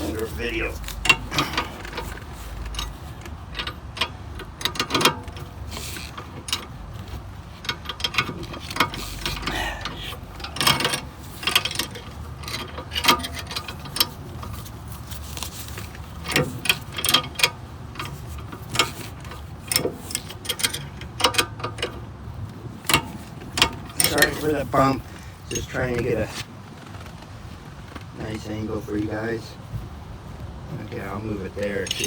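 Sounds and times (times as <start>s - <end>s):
wrench clicking on metal bolt: 0.9s - 6.7s, 7.6s - 14.6s, 16.2s - 22.0s, 22.9s - 24.6s, 31.6s - 32.0s.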